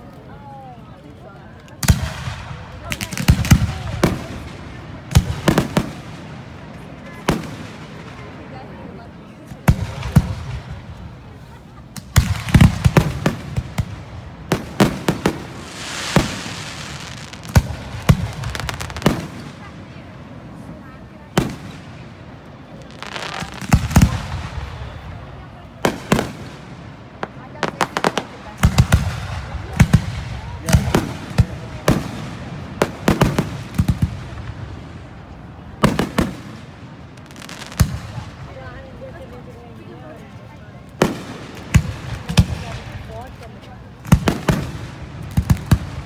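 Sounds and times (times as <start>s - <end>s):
fireworks bangs: 1.8s - 38.8s, 41.0s - 46.0s
fireworks crackling hiss: 12.0s - 19.7s, 22.7s - 24.9s, 35.8s - 38.5s.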